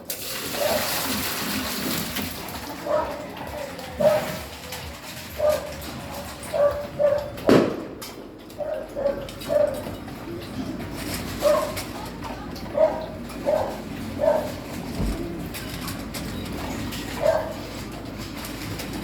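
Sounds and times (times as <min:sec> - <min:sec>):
dog barking: 0:00.5 - 0:01.0, 0:02.8 - 0:03.3, 0:04.0 - 0:04.4, 0:05.3 - 0:07.5, 0:08.6 - 0:09.9, 0:11.4 - 0:11.8, 0:12.7 - 0:14.6, 0:17.2 - 0:17.7.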